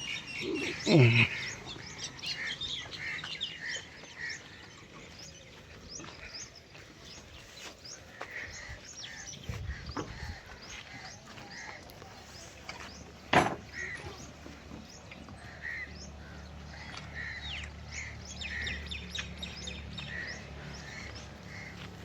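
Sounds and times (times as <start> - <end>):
loud low falling bird call: 0.0 - 3.1
small birds chirping: 0.0 - 22.0.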